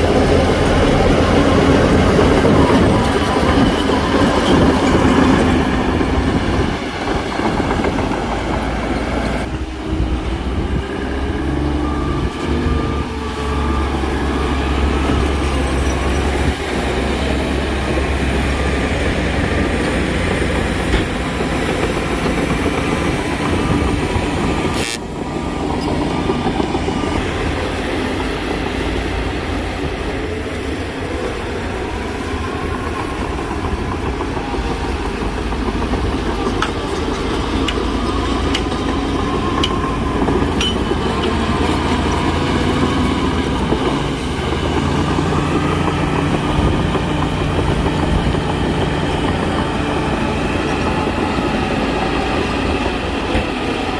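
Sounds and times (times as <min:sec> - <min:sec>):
diesel machinery engine running: 0:00.0 - 0:53.9.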